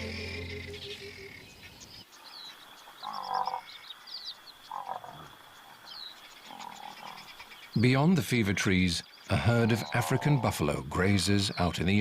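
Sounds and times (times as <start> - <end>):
background music: 0.0 - 1.5
high bird chirps: 0.0 - 2.5
frogs croaking: 0.0 - 10.6.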